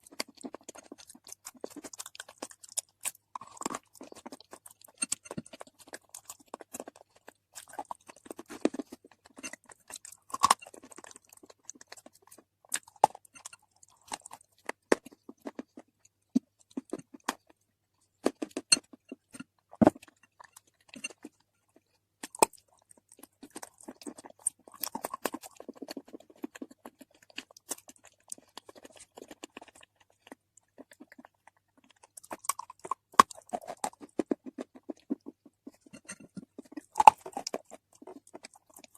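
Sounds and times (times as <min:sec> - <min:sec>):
crunching while chewing: 0:00.0 - 0:38.9.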